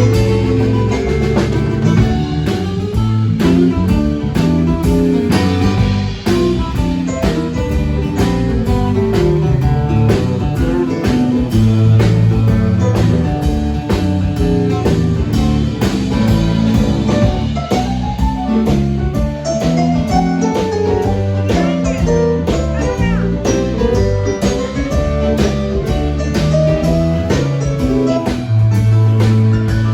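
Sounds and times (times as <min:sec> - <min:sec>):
drum kit steady beat: 0:00.0 - 0:29.9
electric guitar playing: 0:00.0 - 0:29.9.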